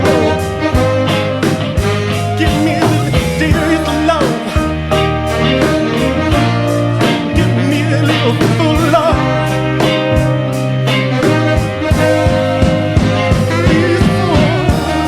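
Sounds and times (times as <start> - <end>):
song with guitar bass and drums: 0.0 - 15.0
wordless vocal sounds: 2.2 - 4.8, 12.2 - 15.0.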